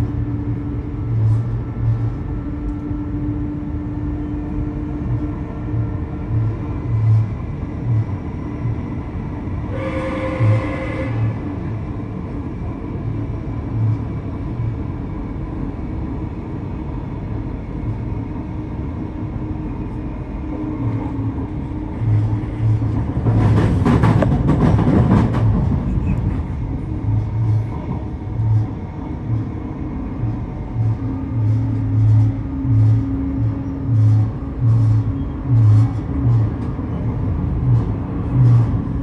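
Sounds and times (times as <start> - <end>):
train rumbling on rails: 0.0 - 39.0
rapid clattering of wheels: 22.8 - 26.6.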